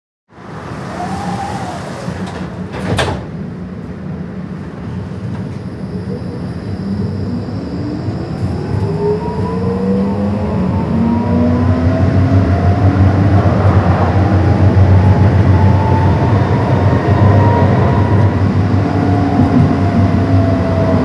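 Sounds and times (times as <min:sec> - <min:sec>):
tram doors sliding shut: 0:00.3 - 0:21.0
traction motor whine: 0:00.5 - 0:03.1.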